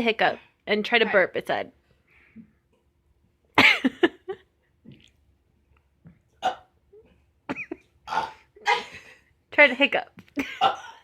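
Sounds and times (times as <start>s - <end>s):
person belching: 8.1s - 8.8s
small throat sounds: 8.1s - 8.8s.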